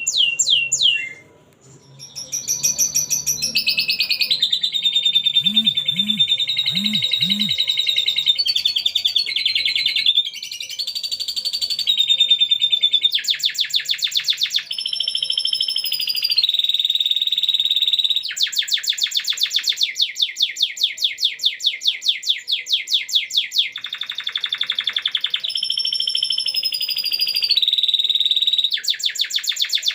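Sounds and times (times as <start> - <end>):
canary singing trills and whistles: 0.0 - 29.9.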